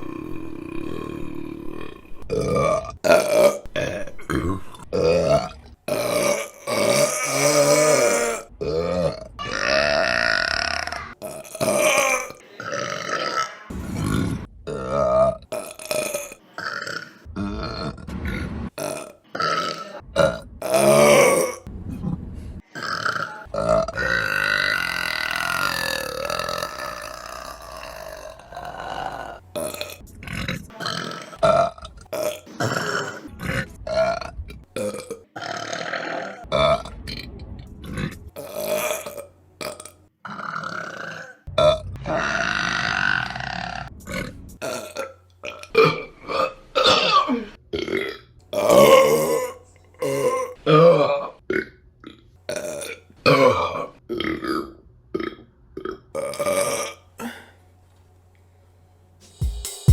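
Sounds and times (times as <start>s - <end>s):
women burping: 0.0s - 13.7s.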